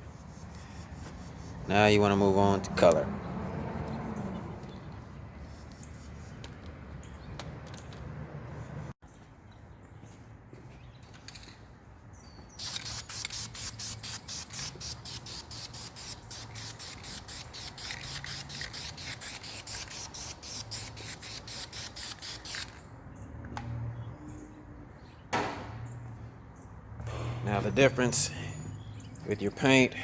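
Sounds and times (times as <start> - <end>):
spray can hissing: 12.6 - 22.8.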